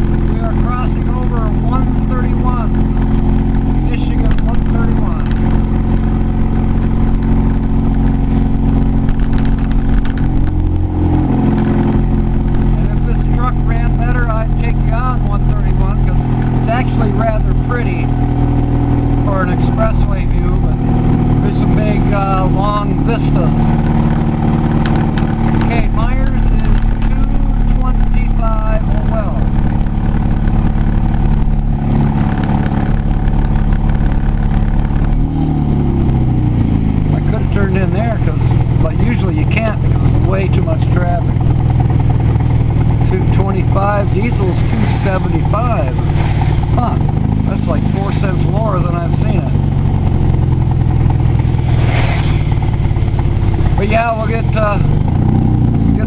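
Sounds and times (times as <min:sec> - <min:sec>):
truck engine and road noise: 0:00.0 - 0:56.0
man talking: 0:00.1 - 0:03.0, 0:03.7 - 0:05.5, 0:12.6 - 0:18.1, 0:19.2 - 0:23.8, 0:25.5 - 0:29.6, 0:37.1 - 0:41.3, 0:43.0 - 0:46.1, 0:46.7 - 0:49.6, 0:53.8 - 0:55.0.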